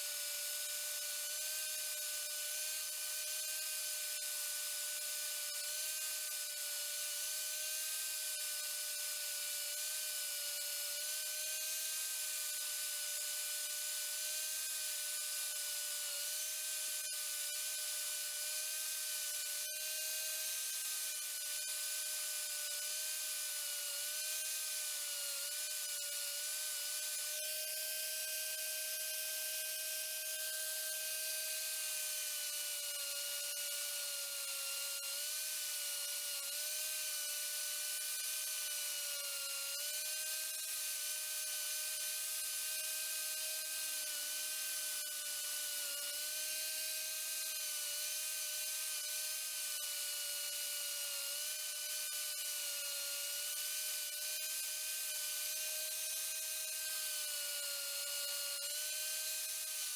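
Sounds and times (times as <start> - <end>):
power tool whining: 15.0 - 59.9.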